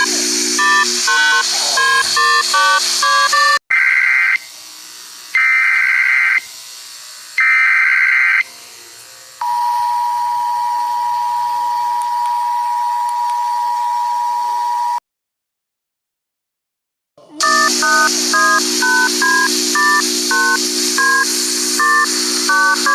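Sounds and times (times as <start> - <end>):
two-tone alert signal: 0.0 - 3.6, 17.4 - 22.9
harsh electronic data bursts: 0.0 - 8.5, 17.4 - 22.9.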